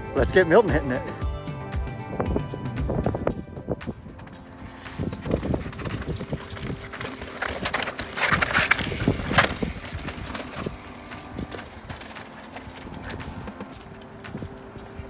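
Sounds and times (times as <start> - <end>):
bike tyres crunching over rock: 4.7 - 15.0.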